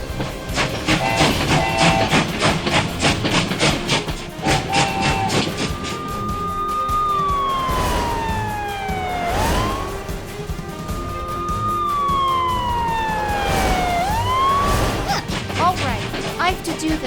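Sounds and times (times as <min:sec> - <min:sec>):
background music: 0:00.0 - 0:17.0
emergency vehicle siren wailing: 0:00.9 - 0:02.6, 0:04.4 - 0:16.2.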